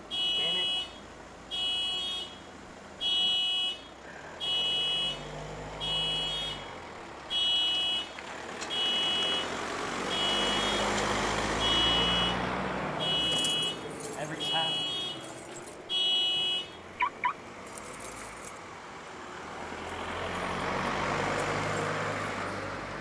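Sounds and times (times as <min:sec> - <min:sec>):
car alarm beeping: 0:00.0 - 0:05.2, 0:05.8 - 0:06.7, 0:07.3 - 0:09.5, 0:10.1 - 0:17.4.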